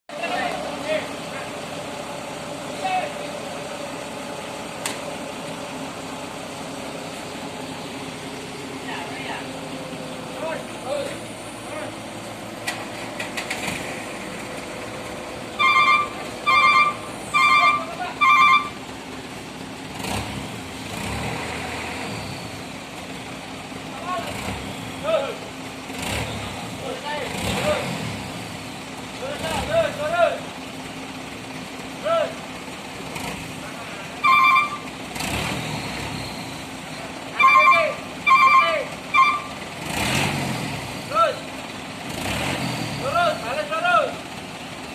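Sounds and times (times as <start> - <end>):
engine running: 0.1 - 44.9
reversing alarm beeping: 15.6 - 18.8, 34.2 - 35.0, 37.3 - 39.6
vehicle horn honking: 15.6 - 18.8, 34.2 - 34.9, 37.4 - 39.6.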